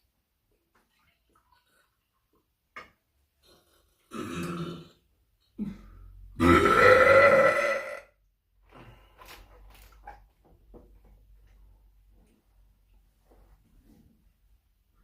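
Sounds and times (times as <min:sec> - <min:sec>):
person burping: 0:04.1 - 0:08.2.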